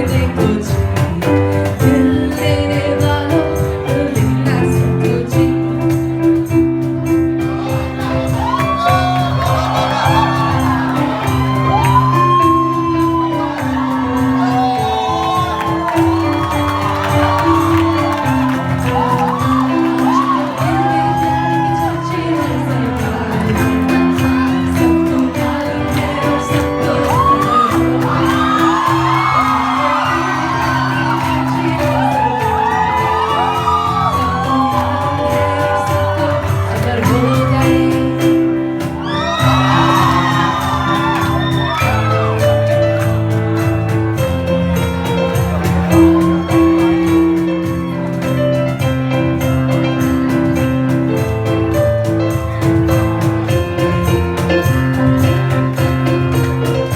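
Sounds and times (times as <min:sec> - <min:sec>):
audience whooping and shouting: 0:07.6 - 0:37.7, 0:38.8 - 0:48.9.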